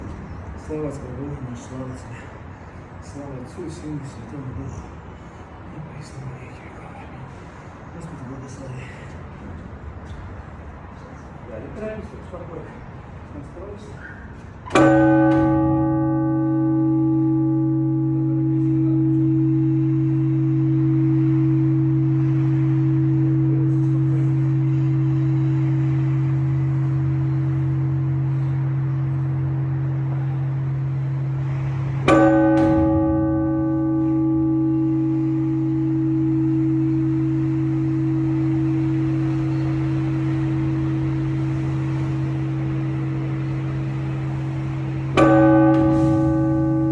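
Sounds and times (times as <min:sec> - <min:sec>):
church bell ringing: 0:14.7 - 0:46.9.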